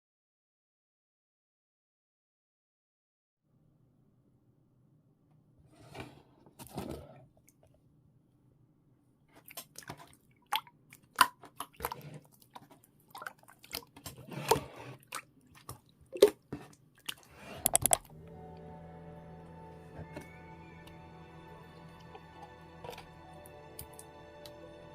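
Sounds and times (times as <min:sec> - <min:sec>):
slime squelching and popping: 0:15.0 - 0:18.1.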